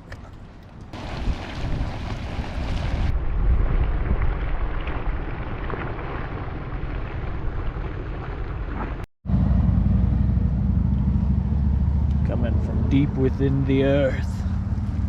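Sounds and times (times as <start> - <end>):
wind buffeting microphone: 0.9 - 9.0.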